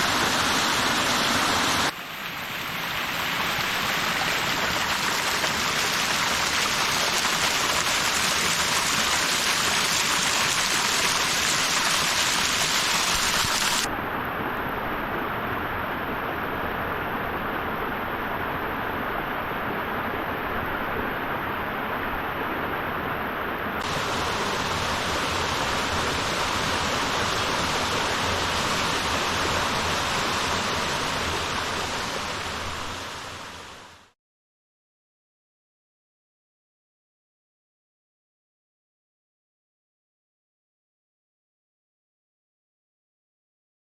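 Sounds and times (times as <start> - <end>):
waterfall rushing: 0.0 - 1.9, 2.7 - 13.9, 23.8 - 33.9.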